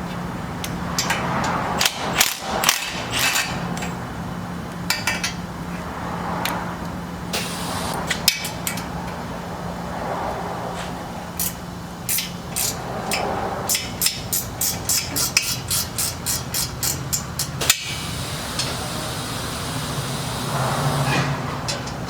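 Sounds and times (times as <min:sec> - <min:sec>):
ratchet wrench clicking on metal: 0:11.4 - 0:17.9.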